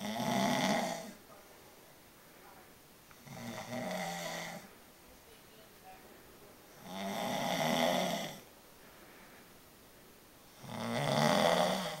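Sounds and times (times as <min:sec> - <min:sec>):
man snoring: 0:00.0 - 0:01.2, 0:03.2 - 0:04.7, 0:06.8 - 0:08.5, 0:10.5 - 0:12.0
quiet breathing: 0:00.0 - 0:12.0.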